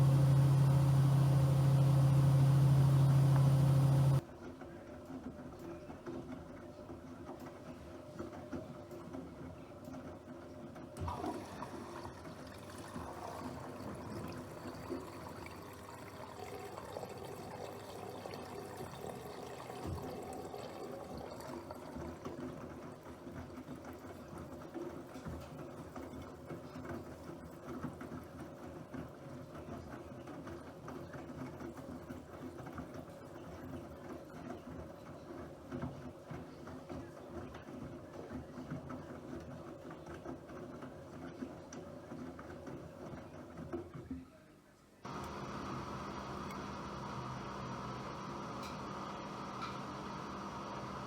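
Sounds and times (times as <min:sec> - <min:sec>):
washing machine water splashing: 0:00.0 - 0:04.2, 0:10.8 - 0:43.9, 0:45.1 - 0:51.0.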